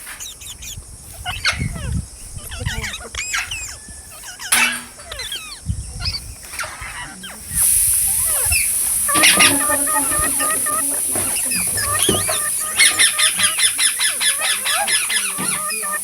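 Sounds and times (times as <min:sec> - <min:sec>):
parrots squawking and chirping: 0:00.2 - 0:16.0
steady high hiss: 0:07.4 - 0:16.0.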